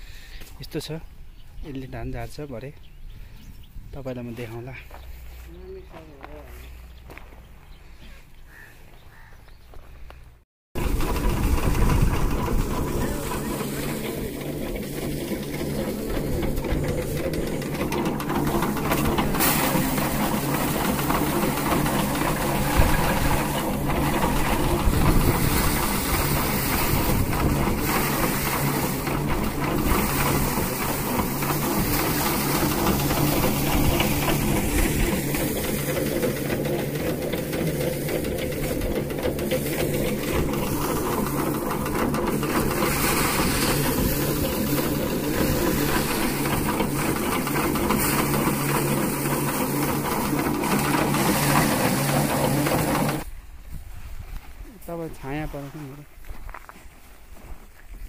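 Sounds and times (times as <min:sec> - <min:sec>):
threshing machine droning: 0:10.8 - 0:53.3.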